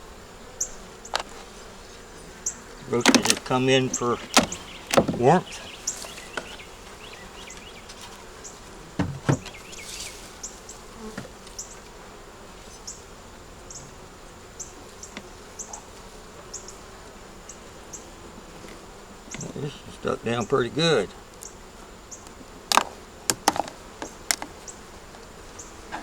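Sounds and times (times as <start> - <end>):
bees buzzing: 0.0 - 26.0
sharp knocks: 3.0 - 3.6, 4.2 - 5.4, 9.0 - 9.6.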